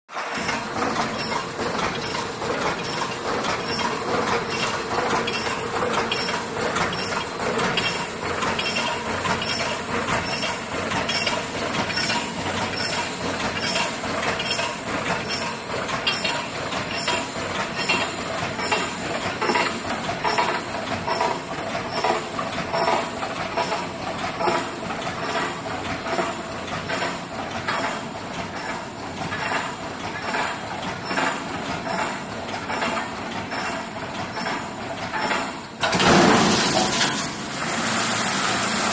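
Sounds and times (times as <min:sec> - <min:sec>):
welding machine mechanical clacks: 0:00.1 - 0:38.9.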